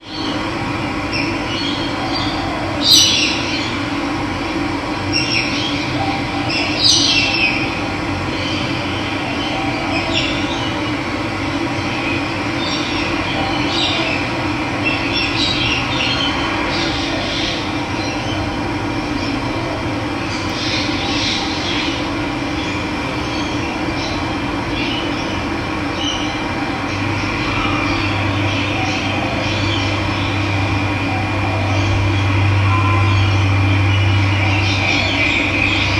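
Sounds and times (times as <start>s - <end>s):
birds chirping: 20.2s - 35.9s.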